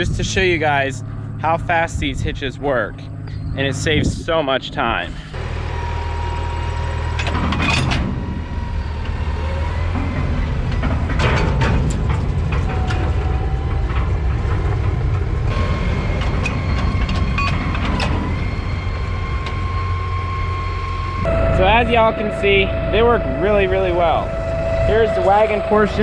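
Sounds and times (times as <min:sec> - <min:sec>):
tractor engine running: 0:05.1 - 0:26.0
metal clanks and rattles: 0:05.4 - 0:19.8.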